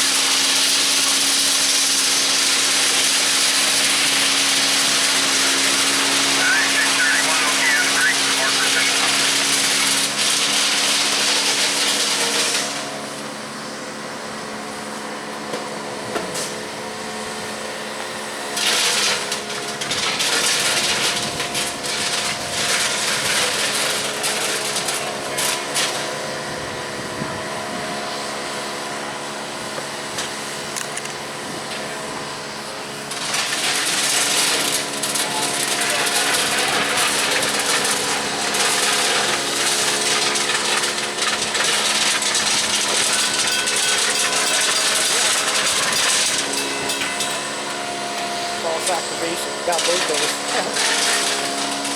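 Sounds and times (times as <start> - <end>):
diesel engine running: 1.4 - 18.5
loud hissing noise: 5.3 - 9.2.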